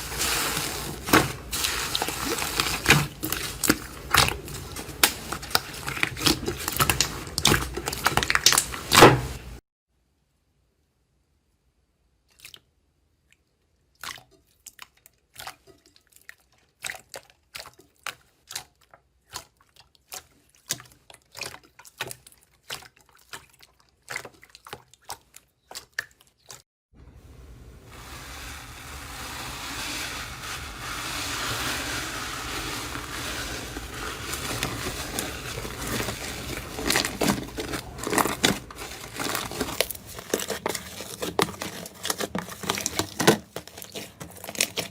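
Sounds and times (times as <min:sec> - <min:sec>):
slime clicking and squishing: 0:00.2 - 0:09.5, 0:34.2 - 0:44.9.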